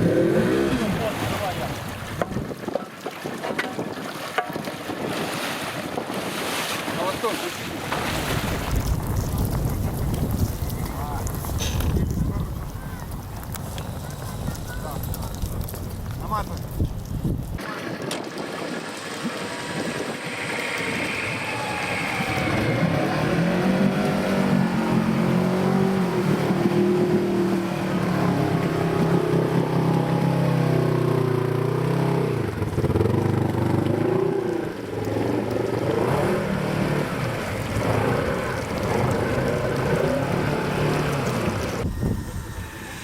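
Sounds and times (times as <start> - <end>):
vehicle engine revving: 0.0 - 1.6, 19.4 - 43.0.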